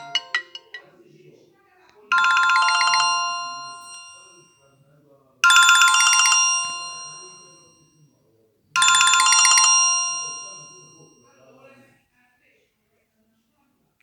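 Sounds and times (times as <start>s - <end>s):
phone ringtone chime tones: 0.0s - 0.8s, 2.1s - 4.6s, 5.4s - 7.8s, 8.8s - 11.2s.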